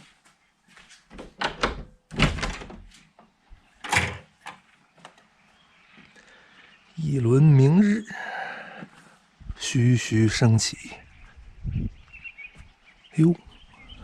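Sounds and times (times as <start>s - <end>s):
door sliding clatters: 1.2s - 3.0s, 3.8s - 4.5s.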